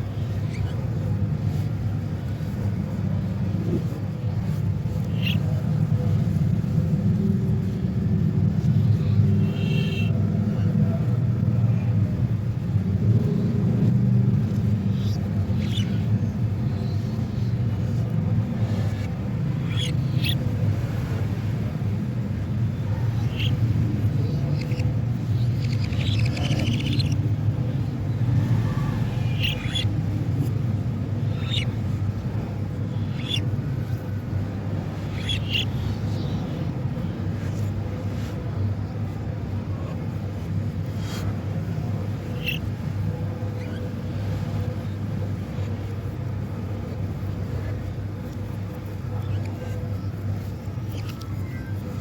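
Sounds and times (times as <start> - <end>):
steady low rumble: 0.0 - 52.0
budgerigar chirps: 5.1 - 5.5, 9.4 - 10.2, 14.9 - 16.2, 18.6 - 20.5, 22.9 - 27.2, 28.7 - 29.9, 31.2 - 31.8, 32.9 - 34.0, 35.0 - 36.7, 42.2 - 42.7.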